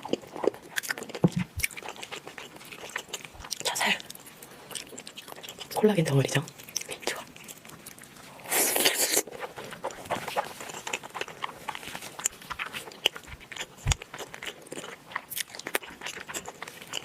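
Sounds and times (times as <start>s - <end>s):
wet chewing clicks: 0.0s - 17.0s
rustling bite: 6.5s - 17.0s.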